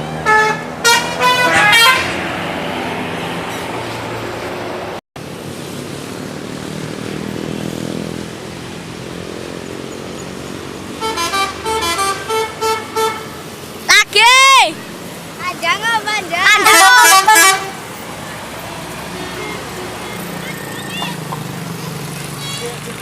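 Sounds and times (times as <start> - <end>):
bus engine rumble: 0.0 - 23.0
multi-note musical bus horn: 0.1 - 2.5, 11.0 - 13.5, 16.6 - 17.8, 19.0 - 20.2.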